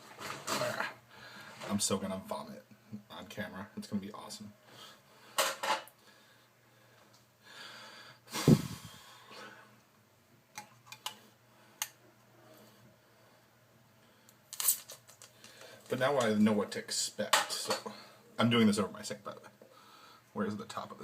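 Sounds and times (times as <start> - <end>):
man breathing heavily: 6.0 - 9.8, 19.7 - 20.3.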